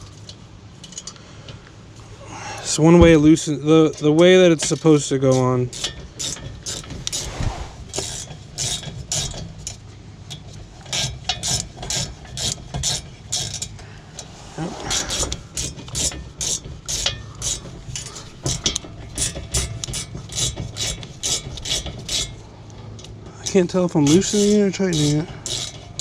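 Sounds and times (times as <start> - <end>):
ratchet wrench clicking: 3.9 - 7.2, 15.1 - 22.4, 23.0 - 26.0.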